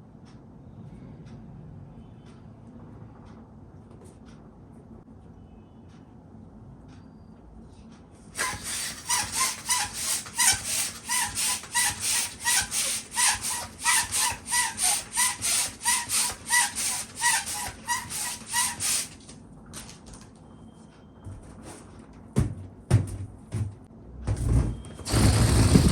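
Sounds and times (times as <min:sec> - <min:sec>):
hand pump inflating balloon: 0:08.4 - 0:19.3, 0:25.0 - 0:25.9.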